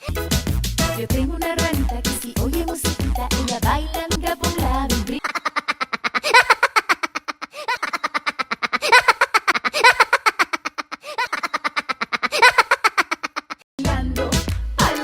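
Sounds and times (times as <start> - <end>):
cartoon laugh sound effect: 5.2 - 13.6.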